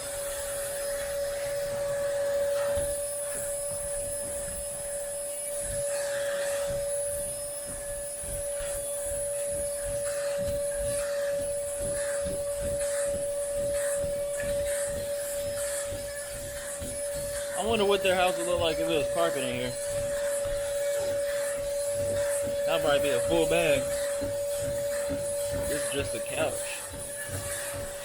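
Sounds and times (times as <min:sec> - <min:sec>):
vacuum cleaner whine: 0:00.0 - 0:28.0
nozzle rubbing and bumping: 0:09.1 - 0:28.0.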